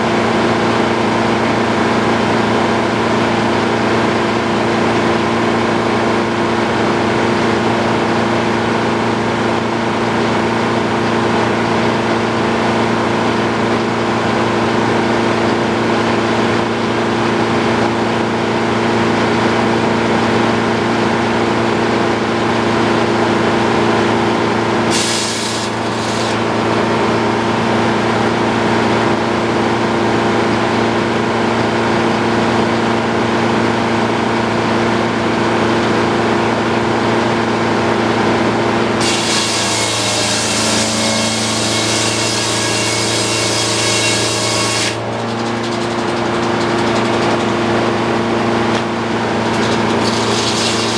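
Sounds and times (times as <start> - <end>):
sawmill humming: 23.7 - 28.6, 37.6 - 50.9.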